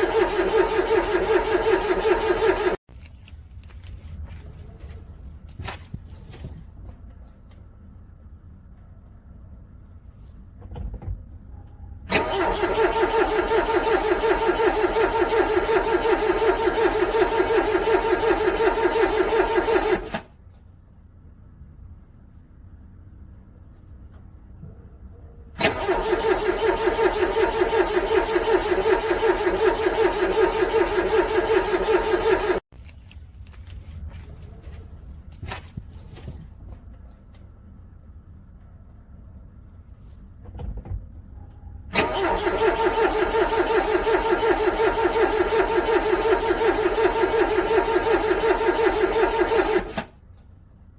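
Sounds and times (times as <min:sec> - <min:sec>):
car starter motor cranking: 0:00.0 - 0:02.8, 0:12.1 - 0:20.3, 0:25.6 - 0:32.6, 0:41.9 - 0:50.2.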